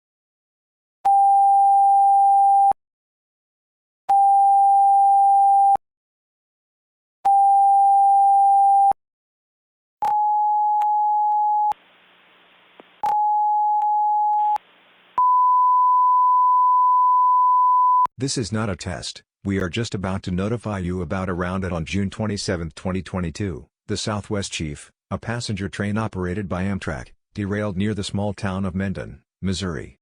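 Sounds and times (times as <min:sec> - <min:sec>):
faint hiss: 0:11.8 - 0:13.0, 0:14.6 - 0:15.2.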